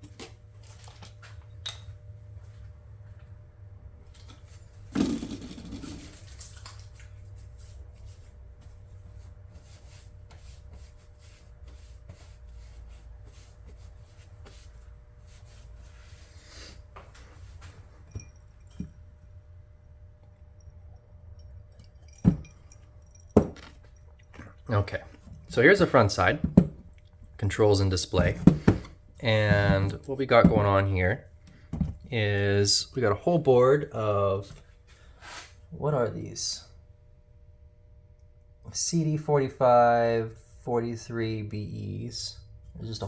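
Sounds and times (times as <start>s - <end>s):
faint steady hum: 0.0s - 43.0s
scrape and rustle: 35.2s - 35.6s.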